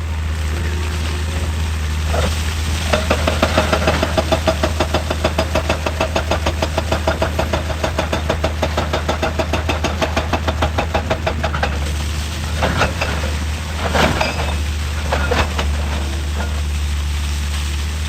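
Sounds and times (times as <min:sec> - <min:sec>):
heavy machinery knocking: 0:02.8 - 0:16.7.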